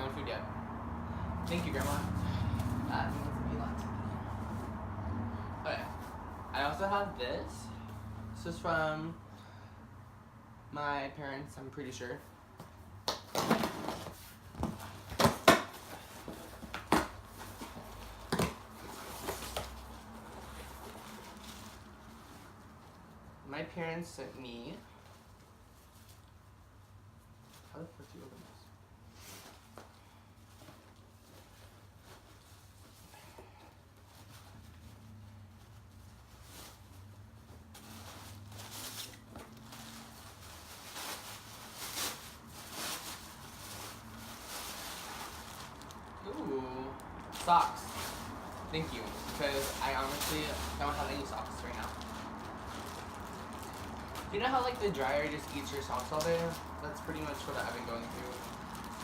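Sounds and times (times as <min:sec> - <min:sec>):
packaging rustling and tearing: 0:35.8 - 0:46.3, 0:46.9 - 0:59.0.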